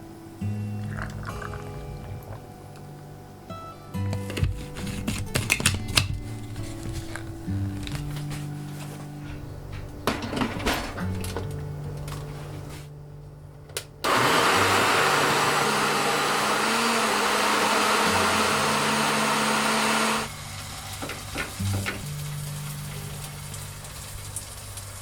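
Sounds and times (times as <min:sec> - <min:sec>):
background music: 0:00.0 - 0:23.9
electric blender running: 0:14.0 - 0:20.5.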